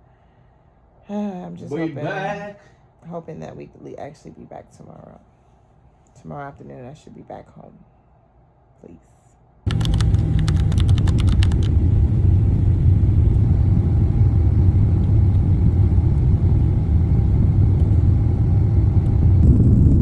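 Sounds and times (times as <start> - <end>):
quick clicks: 9.7 - 13.5
loud low rumble: 9.7 - 20.0.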